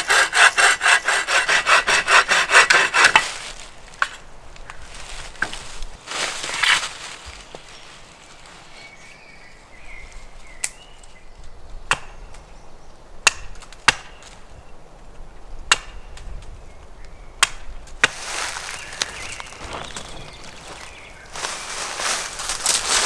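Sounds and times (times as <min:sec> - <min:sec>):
rustling: 0:18.0 - 0:23.0.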